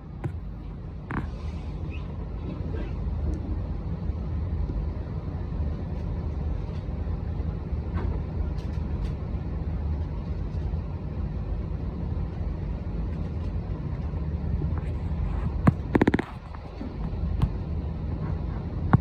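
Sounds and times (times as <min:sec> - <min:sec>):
electric train rumbling: 0:00.0 - 0:19.0.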